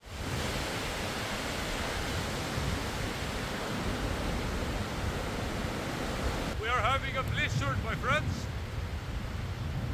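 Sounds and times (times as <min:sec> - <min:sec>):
blizzard wind rushing: 0:00.0 - 0:09.9
wind buffeting microphone: 0:00.0 - 0:09.9.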